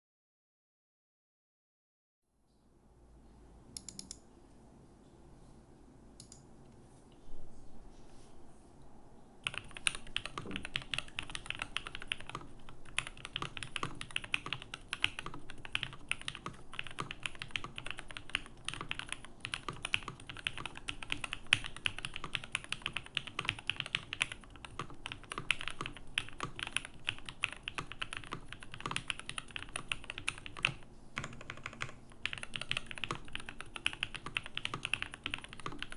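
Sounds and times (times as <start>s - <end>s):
mechanical keyboard typing: 9.4s - 35.9s.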